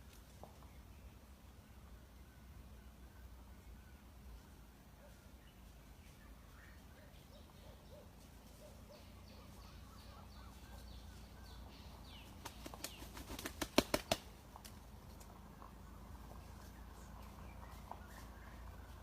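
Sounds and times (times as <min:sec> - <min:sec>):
wings flapping: 0:12.3 - 0:14.8.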